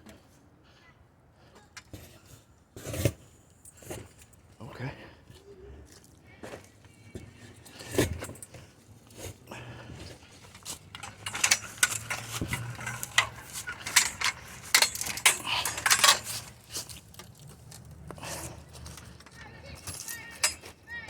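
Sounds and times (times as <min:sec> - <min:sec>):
metal clinking on metal: 0:10.5 - 0:20.8.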